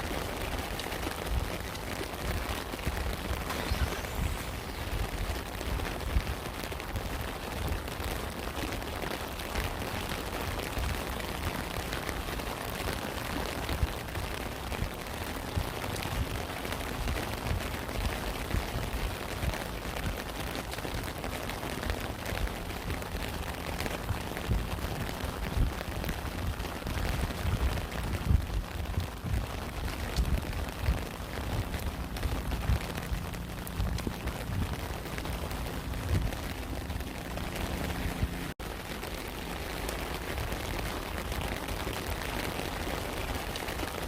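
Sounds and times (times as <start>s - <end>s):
rain pattering: 0.0s - 44.0s
low rumble: 1.3s - 7.7s, 21.9s - 40.9s.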